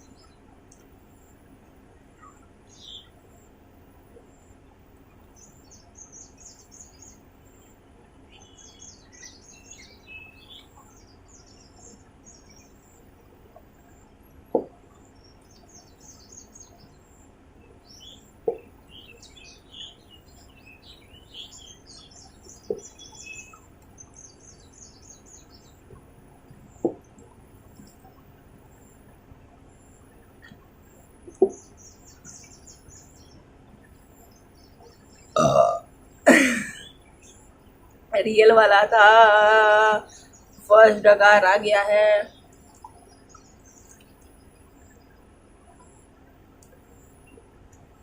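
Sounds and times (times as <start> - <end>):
birds chirping: 0.0 - 48.0
person gulping water: 35.4 - 36.9.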